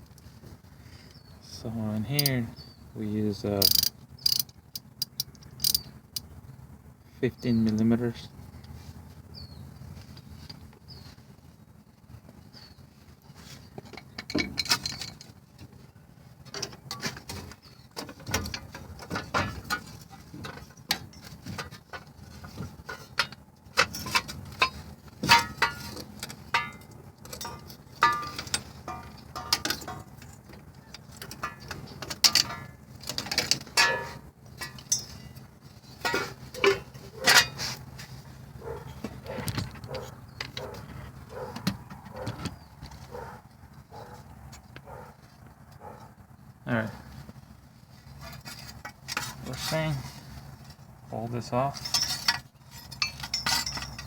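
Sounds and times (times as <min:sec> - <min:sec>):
hand ratchet clicking: 0:03.6 - 0:05.8
metal clinks of tools: 0:22.9 - 0:35.4, 0:51.7 - 0:54.0.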